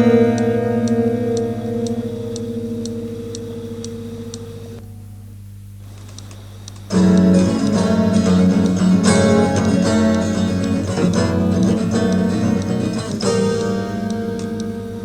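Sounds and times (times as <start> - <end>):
twelve-string guitar playing: 0.0 - 4.8, 6.9 - 15.0
low hum: 0.0 - 15.0.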